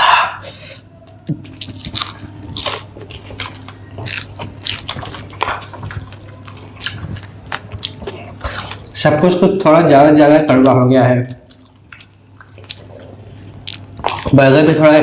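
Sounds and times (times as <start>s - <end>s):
person eating crunchy food: 1.4s - 9.0s, 11.3s - 15.0s.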